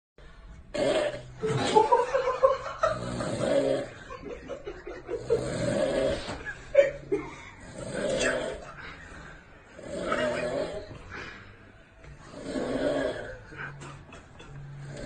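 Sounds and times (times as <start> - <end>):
man snoring: 0.6 - 11.3, 12.1 - 15.0
people snickering and laughing: 1.3 - 15.0.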